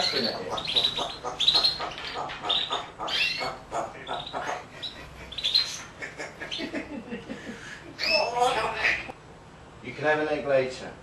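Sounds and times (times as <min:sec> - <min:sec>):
parrot chattering and squawking: 0:00.0 - 0:06.9, 0:07.6 - 0:09.2.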